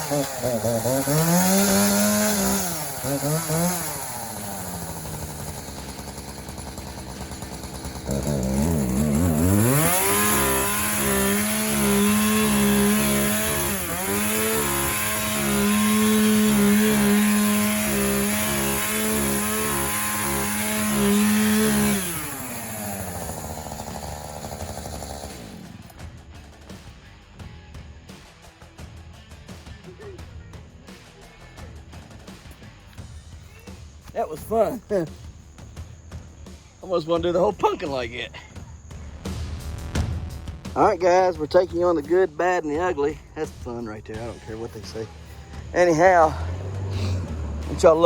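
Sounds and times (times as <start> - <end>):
chainsaw revving and idling: 0.0 - 26.0, 36.4 - 48.0.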